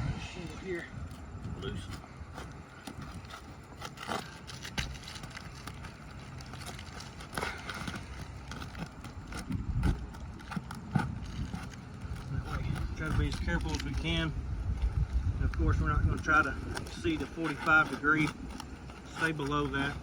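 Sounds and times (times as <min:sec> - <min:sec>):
roof shingles knocking and scraping: 0:01.9 - 0:14.0, 0:16.1 - 0:20.0.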